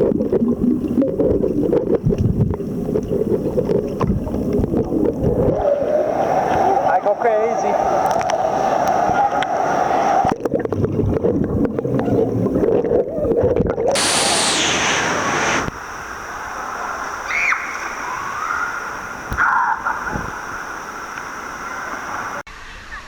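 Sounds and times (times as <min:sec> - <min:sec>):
muffled underwater sloshing: 0:00.0 - 0:22.4
loud rush of water: 0:05.3 - 0:10.4, 0:14.0 - 0:22.4.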